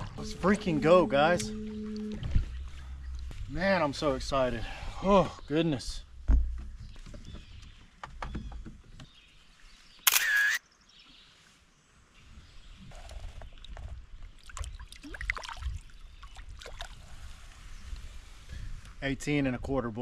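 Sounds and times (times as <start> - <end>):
camera shutter: 10.0 - 10.6.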